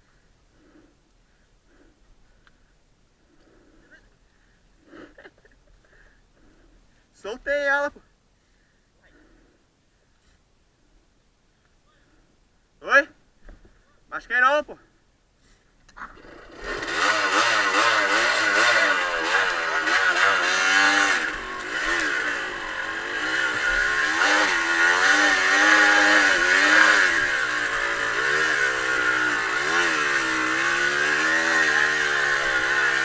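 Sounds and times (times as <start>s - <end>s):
motorcycle engine revving: 16.0s - 33.0s.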